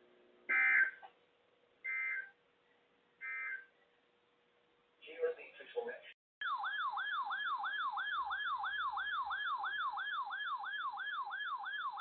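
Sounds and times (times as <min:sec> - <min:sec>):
electronic yelp siren alert tone: 0:00.5 - 0:01.0, 0:06.4 - 0:12.0.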